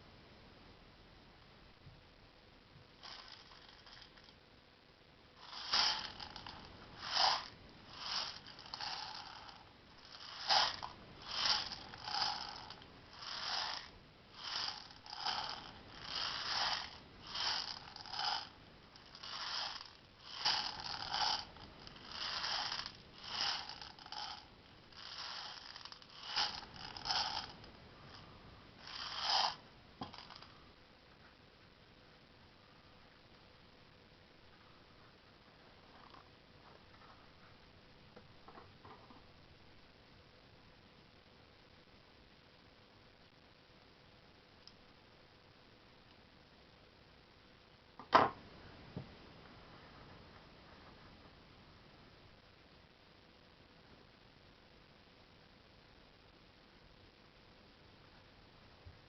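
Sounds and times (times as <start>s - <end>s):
rasping ripping strokes: 5.4s - 18.5s, 19.1s - 27.6s.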